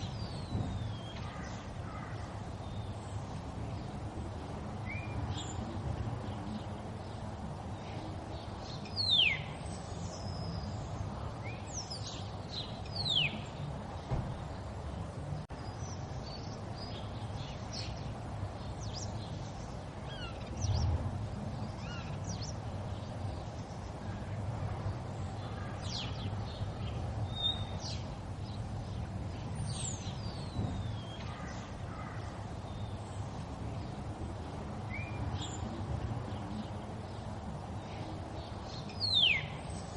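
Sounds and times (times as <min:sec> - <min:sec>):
low thump: 0:14.0 - 0:14.4.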